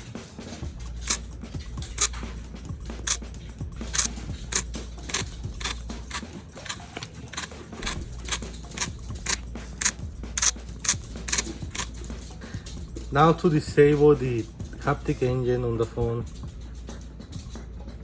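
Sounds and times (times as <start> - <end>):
phone vibration motor rattling: 1.0 - 2.2, 3.9 - 12.0.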